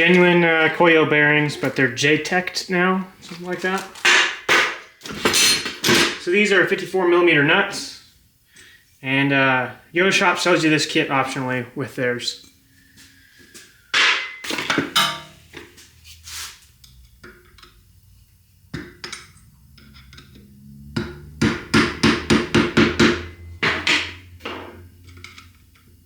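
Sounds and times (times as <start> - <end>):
metal tools clanking: 5.1 - 6.2, 14.0 - 15.5
ringing metal taps: 14.1 - 15.4.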